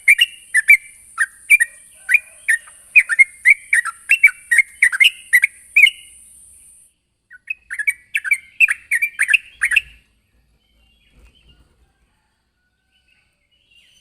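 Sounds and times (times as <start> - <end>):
bird bubbly chirping call: 0.0 - 6.2, 7.3 - 10.0.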